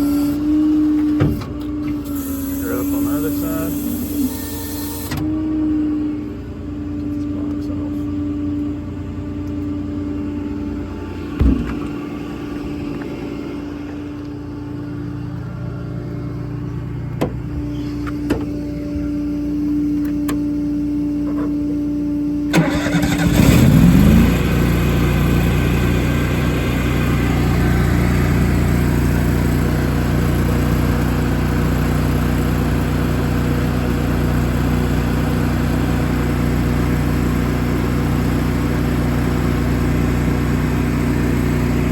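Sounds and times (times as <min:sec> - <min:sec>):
steady hum: 0:01.3 - 0:22.5
clunks: 0:16.6 - 0:18.6
engine cranking and idling: 0:22.5 - 0:33.6.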